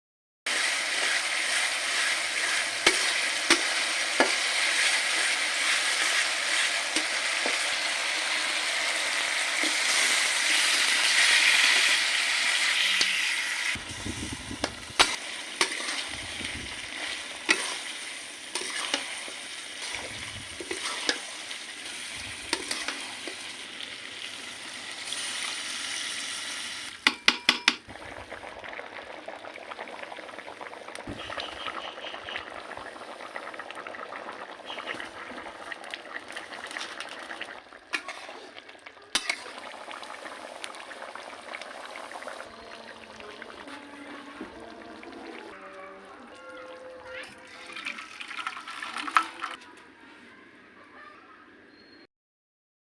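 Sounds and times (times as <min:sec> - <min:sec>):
chicken sizzling in a pan: 0:00.5 - 0:27.0, 0:28.0 - 0:44.5
spatula scraping a metal pan: 0:18.5 - 0:19.1.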